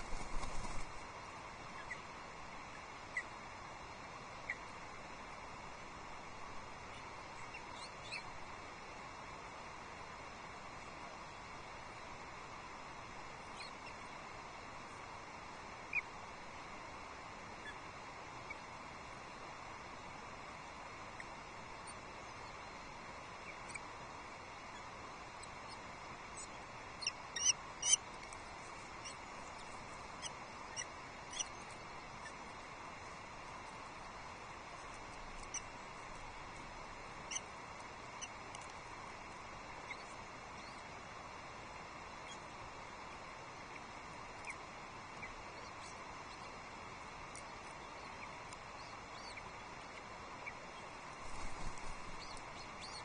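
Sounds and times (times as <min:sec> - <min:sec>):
steady background hiss: 0:00.0 - 0:53.0
osprey chirps: 0:26.4 - 0:28.0, 0:47.8 - 0:53.0.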